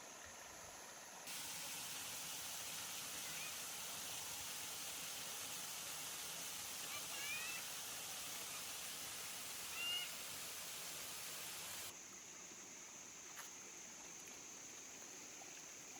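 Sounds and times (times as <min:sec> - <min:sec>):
waterfall rushing: 0:01.3 - 0:11.9
faint high chirps: 0:09.7 - 0:10.2.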